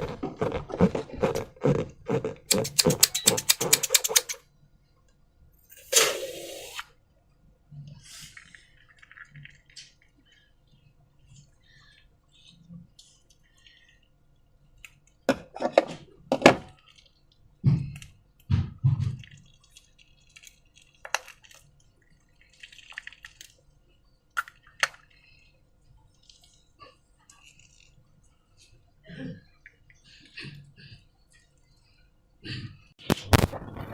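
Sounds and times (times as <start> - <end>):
slime squelching: 0.0 - 4.4.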